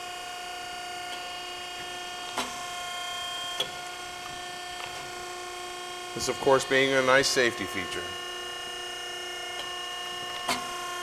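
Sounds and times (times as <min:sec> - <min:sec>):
press brake whine: 0:00.0 - 0:11.0.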